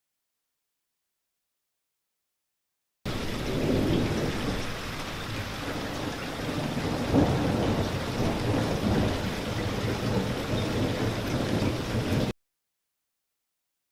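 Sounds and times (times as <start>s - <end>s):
thunder rumbling: 3.1s - 12.3s
steady rain: 3.1s - 12.4s.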